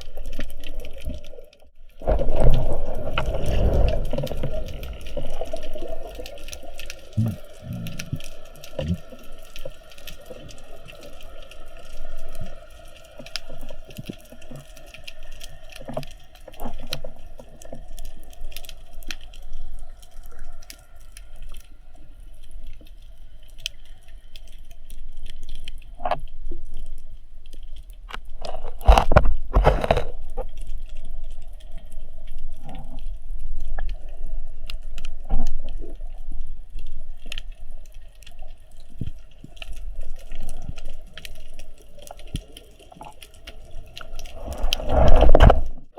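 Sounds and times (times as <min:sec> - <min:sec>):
crackle of small sharp clicks: 0:00.0 - 0:45.9
rush of water: 0:02.0 - 0:22.1, 0:38.8 - 0:45.9.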